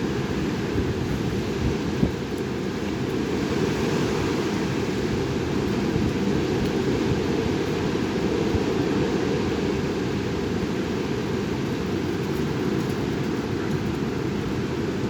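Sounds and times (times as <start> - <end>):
wind blowing across microphone: 0.0 - 15.0.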